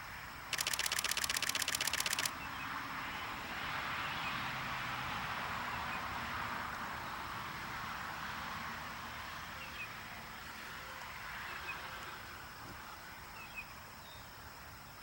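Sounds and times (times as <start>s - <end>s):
outdoor background hiss: 0.0s - 2.6s
faint high bird chirps: 0.5s - 2.3s.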